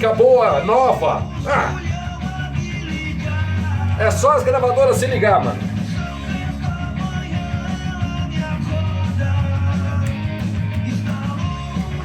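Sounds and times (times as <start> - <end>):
rock song with guitar: 0.0 - 12.0
person singing: 0.7 - 4.0.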